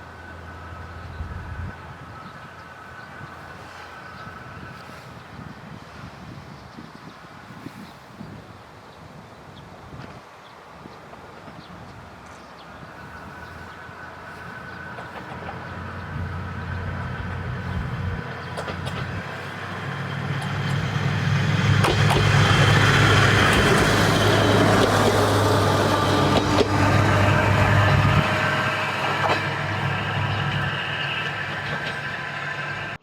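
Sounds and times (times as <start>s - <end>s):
diesel railcar engine drone: 0.0s - 6.3s, 11.0s - 33.0s
train rushing: 10.6s - 33.0s.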